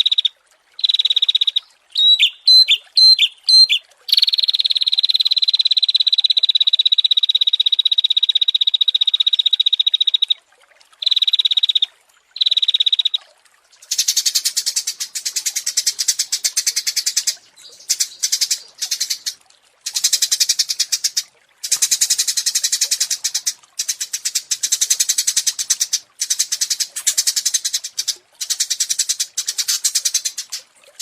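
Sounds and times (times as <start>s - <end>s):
songbird chattering trills: 0.8s - 5.2s, 13.8s - 30.6s.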